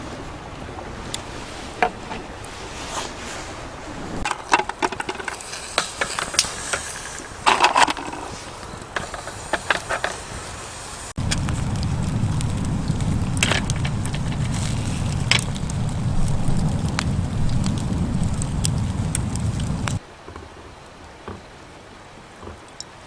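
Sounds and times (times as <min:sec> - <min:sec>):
campfire crackling and popping: 0:04.2 - 0:20.0
low rumble: 0:11.2 - 0:20.0.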